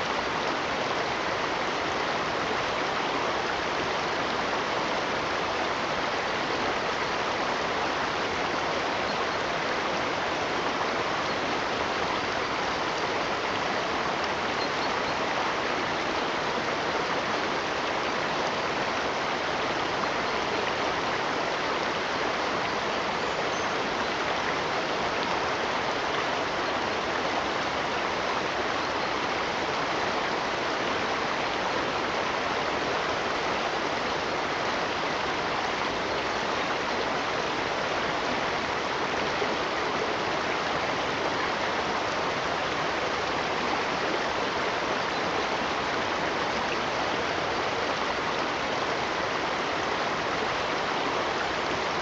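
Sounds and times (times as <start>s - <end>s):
running water rushing: 0.0s - 52.0s.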